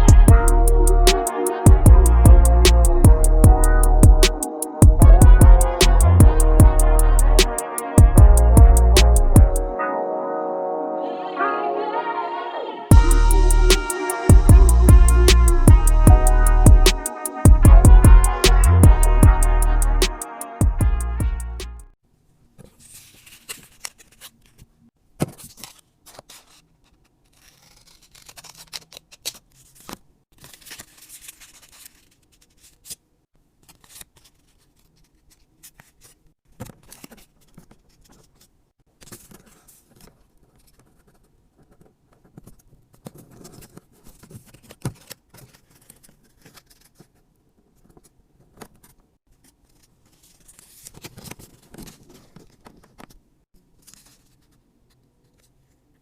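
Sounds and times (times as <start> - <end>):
scissors snipping: 27.3 - 30.0.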